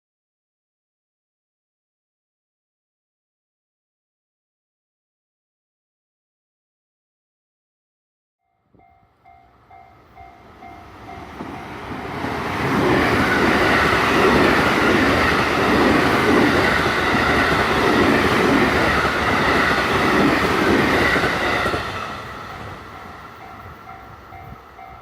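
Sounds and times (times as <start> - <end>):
train rumble: 8.8 - 25.0.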